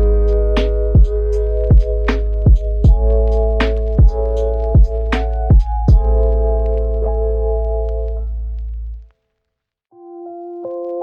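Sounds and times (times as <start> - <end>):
synth chord: 0.0 - 5.2
deep bass note: 0.0 - 6.6
light ticking percussion: 0.0 - 6.9.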